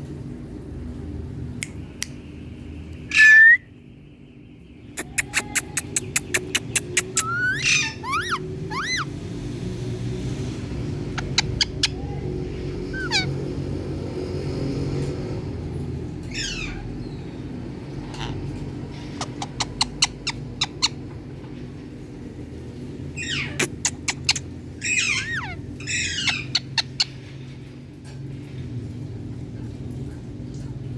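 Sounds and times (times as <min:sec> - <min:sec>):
parrot whistled chirps: 0:03.1 - 0:03.7, 0:05.0 - 0:09.1
parrot rapid clicks: 0:05.0 - 0:07.4.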